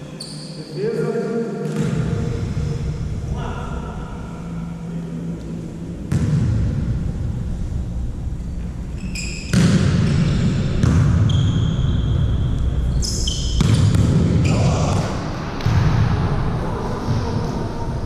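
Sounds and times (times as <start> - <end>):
low rumble of hall: 0.0 - 18.0
shoe squeaks: 0.1 - 0.7, 9.0 - 9.6, 11.2 - 12.2, 12.9 - 14.6
volleyball hits and bounces: 6.1 - 6.7, 9.4 - 11.3, 13.5 - 16.0.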